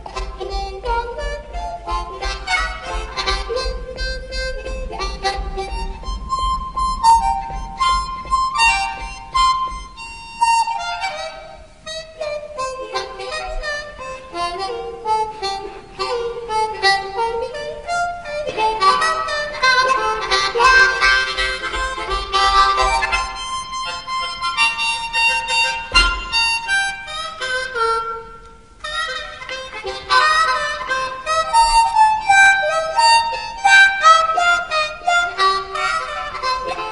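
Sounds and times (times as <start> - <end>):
harmonica playing fast melody: 0.0 - 36.9.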